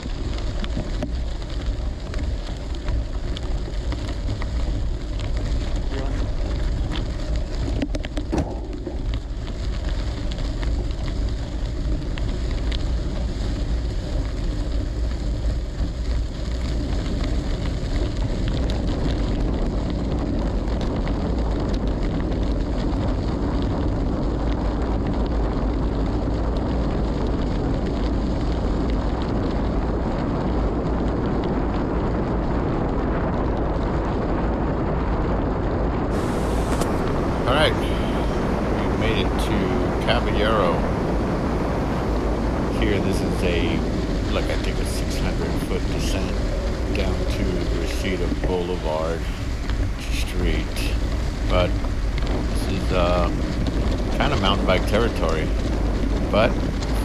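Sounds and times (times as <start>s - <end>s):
wind rumbling on microphone: 0.0s - 57.0s
tyres crunching on dirt: 36.1s - 37.6s.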